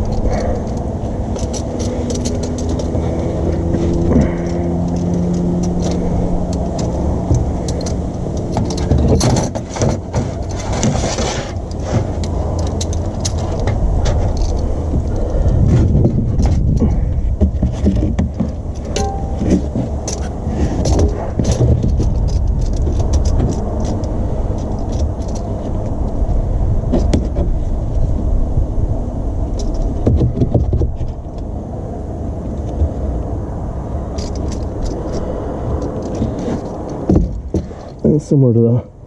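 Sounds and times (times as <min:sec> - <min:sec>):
low rumbling noise: 0:00.0 - 0:39.0.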